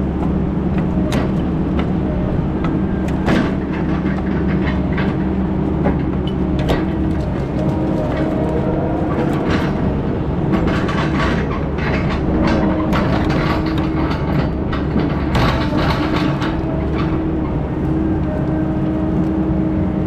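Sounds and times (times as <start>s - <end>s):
heavy equipment engine humming: 0.0s - 20.0s
metallic rattling and clanking: 3.2s - 17.5s.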